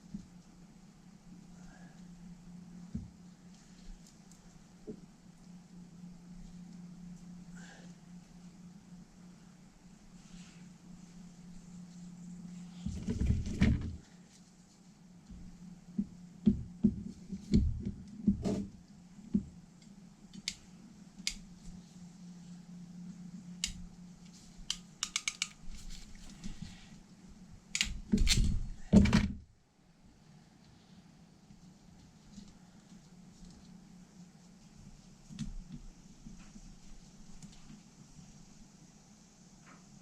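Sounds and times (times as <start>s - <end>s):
steady low hum: 0.0s - 40.0s
clicks and taps of metal parts: 24.7s - 25.6s.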